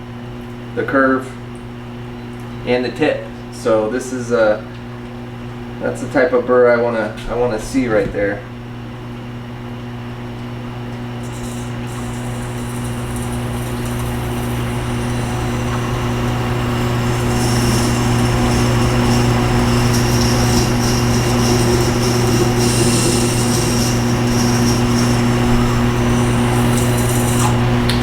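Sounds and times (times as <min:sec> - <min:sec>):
steel hissing on wheel: 0:11.2 - 0:27.9
sharpener motor humming: 0:11.2 - 0:28.0.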